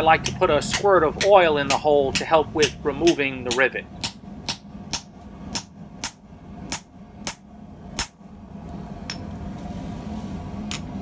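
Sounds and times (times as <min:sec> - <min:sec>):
hammer striking hot steel: 0:00.0 - 0:07.4, 0:08.0 - 0:08.2.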